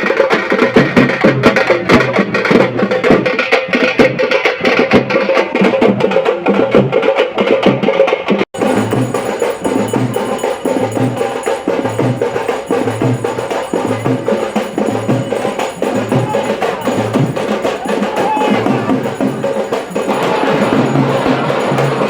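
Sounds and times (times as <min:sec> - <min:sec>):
fast drumming: 0:00.0 - 0:22.0
heavy low drum beat: 0:08.6 - 0:22.0.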